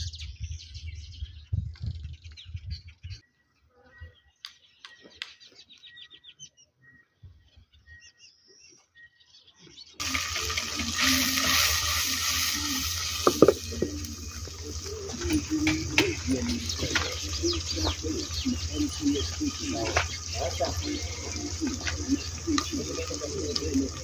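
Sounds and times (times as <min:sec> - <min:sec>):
small birds chirping: 0:00.0 - 0:24.0
low hum: 0:10.0 - 0:24.0.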